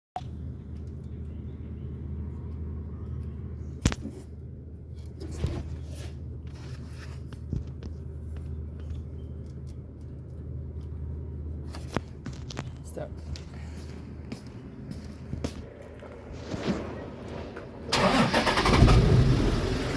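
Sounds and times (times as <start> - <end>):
car engine idling: 17.8 - 19.9.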